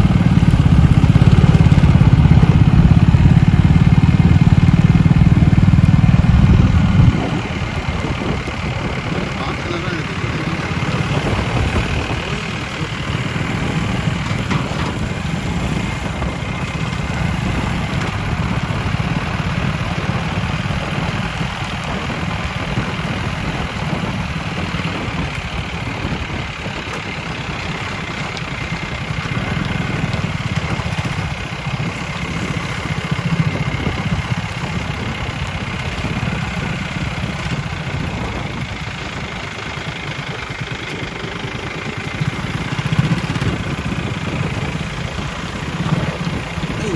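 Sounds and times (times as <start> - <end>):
road noise: 0.0 - 46.9
vehicle engine running: 0.0 - 46.9.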